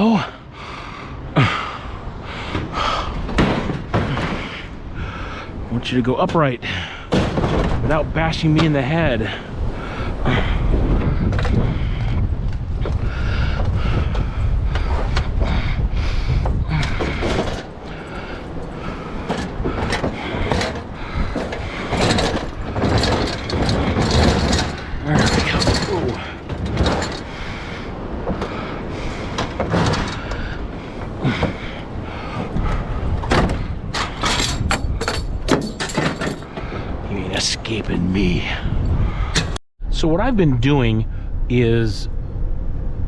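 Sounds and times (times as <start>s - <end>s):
wind rumble on microphone: 0.4s - 43.0s
metal knocks: 7.1s - 9.2s, 16.4s - 28.6s, 29.3s - 31.7s, 33.2s - 36.7s
metal scraping and clunking: 16.4s - 31.8s, 32.4s - 36.9s.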